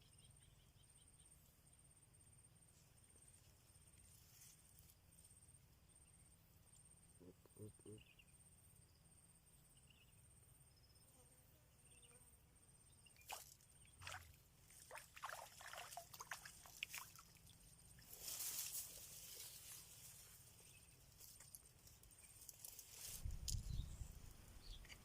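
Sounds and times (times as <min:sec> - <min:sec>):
insect chirping trills: 0:00.0 - 0:11.2, 0:11.8 - 0:25.0
water splashing and sloshing: 0:13.2 - 0:17.7.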